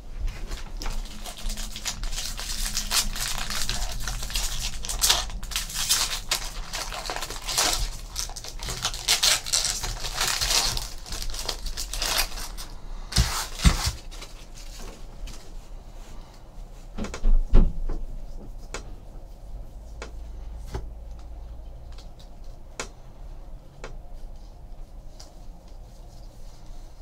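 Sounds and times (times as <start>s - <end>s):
foil wrappers crinkling and tearing: 0.3s - 15.5s
cards being shuffled: 0.4s - 15.4s.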